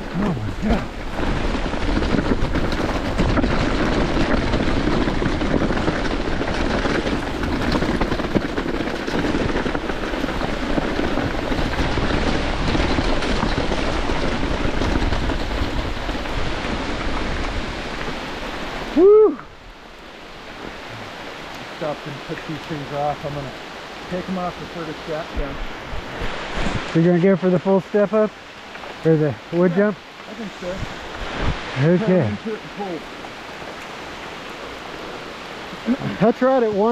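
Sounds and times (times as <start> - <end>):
rush of wind: 0.0 - 27.7, 28.3 - 36.9
bike rolling on trail: 0.0 - 36.9.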